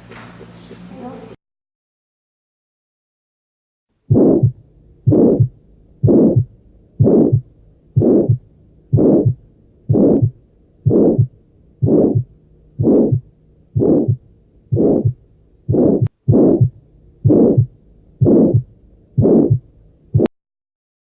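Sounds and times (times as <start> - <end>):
heart murmur whooshing: 4.1 - 20.3
low heartbeat thud: 4.1 - 20.3.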